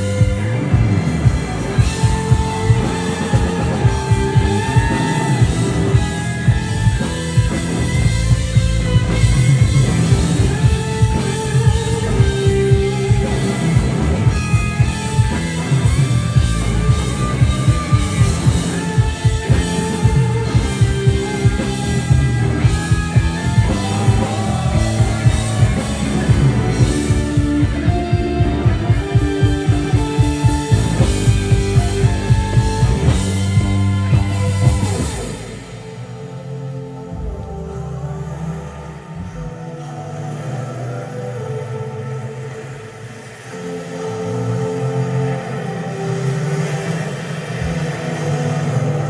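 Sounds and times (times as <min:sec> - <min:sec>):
rock band playing: 0:00.0 - 0:37.6.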